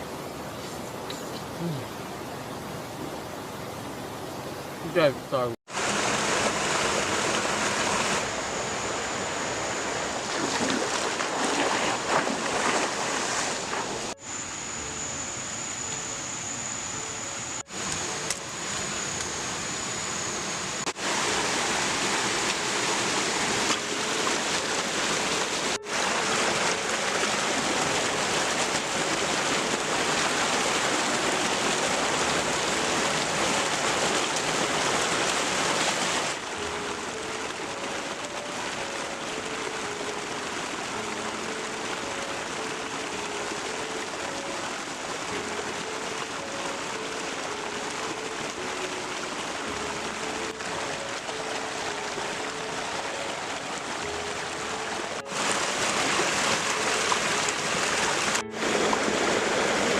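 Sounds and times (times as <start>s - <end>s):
stream rushing: 0.0s - 16.0s, 17.6s - 59.9s
thin high steady tone: 7.0s - 10.8s, 13.7s - 35.2s.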